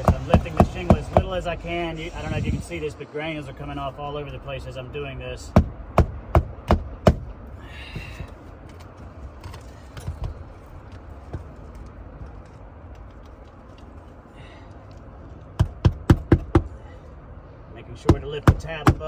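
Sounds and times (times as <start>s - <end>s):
hammer striking a nail: 5.5s - 7.3s, 15.6s - 16.7s, 18.1s - 19.0s.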